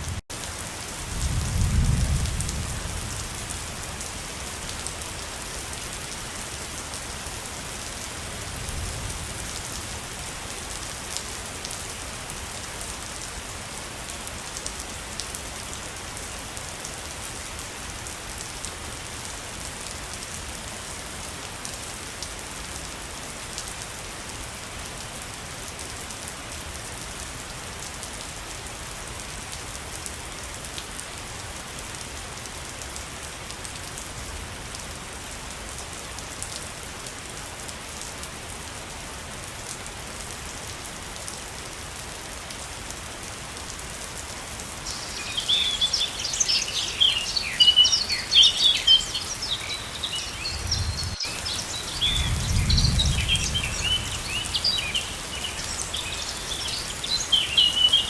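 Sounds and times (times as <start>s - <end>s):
songbirds chirping rapidly: 44.7s - 58.0s
waterfall rushing: 44.7s - 58.0s.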